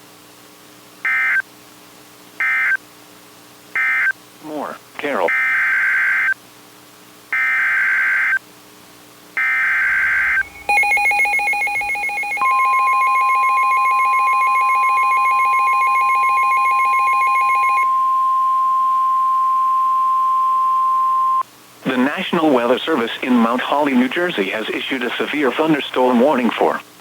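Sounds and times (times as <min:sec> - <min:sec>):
digital data screech bursts: 0:09.4 - 0:12.2
buzzy pulsing alert tone: 0:09.4 - 0:13.1
steady warning tone: 0:09.4 - 0:22.2.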